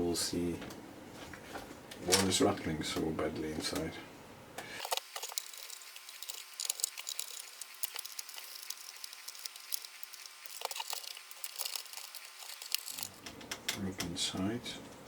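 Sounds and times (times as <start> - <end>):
screwdriver clicking and scraping: 4.8 - 13.2.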